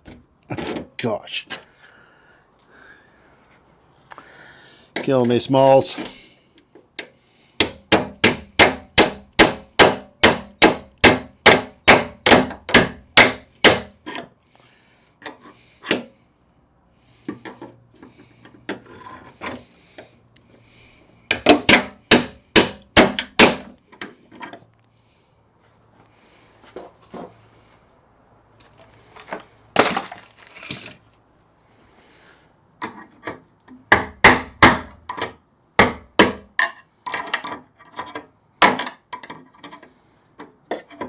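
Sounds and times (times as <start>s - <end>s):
hammer striking a punch: 7.6s - 14.0s, 21.3s - 23.7s, 33.9s - 35.0s, 35.8s - 36.5s.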